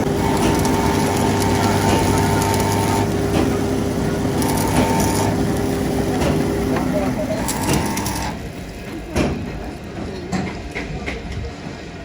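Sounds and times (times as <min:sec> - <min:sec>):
machine humming: 0:00.0 - 0:08.4
noisy background: 0:00.0 - 0:12.0.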